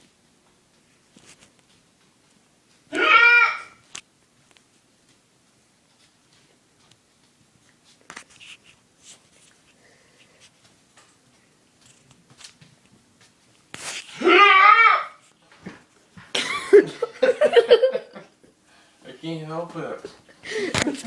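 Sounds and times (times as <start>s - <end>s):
loud laughter: 16.4s - 18.3s.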